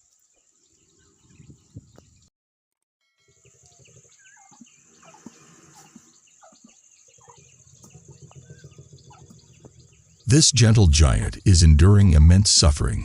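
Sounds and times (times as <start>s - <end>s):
birds chirping: 3.4s - 13.0s.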